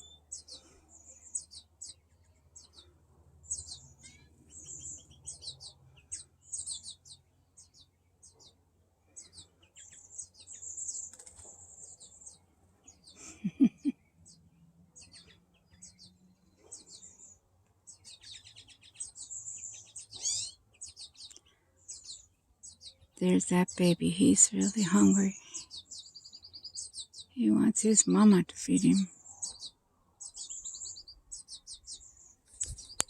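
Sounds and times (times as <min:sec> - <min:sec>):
fledgling begging chirps: 0:11.8 - 0:14.4, 0:15.0 - 0:33.0.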